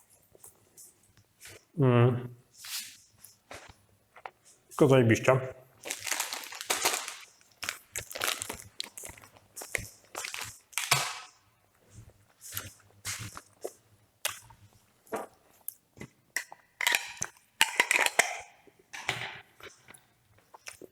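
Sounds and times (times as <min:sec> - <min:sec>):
packaging rustling: 0:05.8 - 0:11.3
packaging crinkling and crackling: 0:05.8 - 0:11.4.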